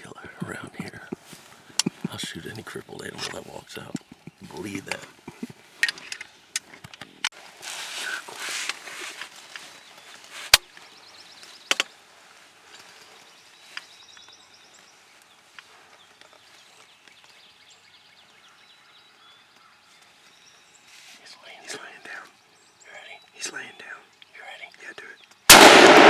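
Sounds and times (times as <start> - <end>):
outdoor rustling: 0.0 - 26.0
sharp clicks or snaps: 25.5 - 26.0.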